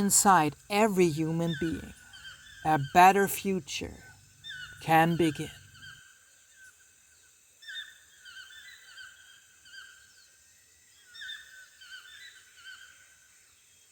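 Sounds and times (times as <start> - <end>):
chirping animal calls: 0.0 - 6.0.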